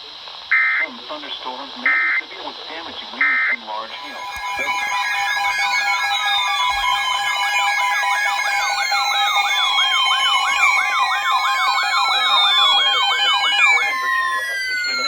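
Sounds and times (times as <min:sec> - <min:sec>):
electronic siren yelps and wails: 0:00.5 - 0:00.9, 0:03.2 - 0:15.0
data-burst beeps: 0:03.2 - 0:15.0
two-tone attention signal: 0:03.2 - 0:15.0.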